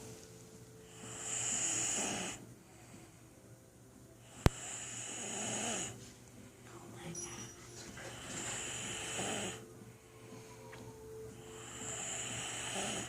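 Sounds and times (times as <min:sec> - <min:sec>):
person snoring: 0:00.9 - 0:02.4, 0:04.2 - 0:06.0, 0:08.1 - 0:09.7, 0:11.4 - 0:13.0.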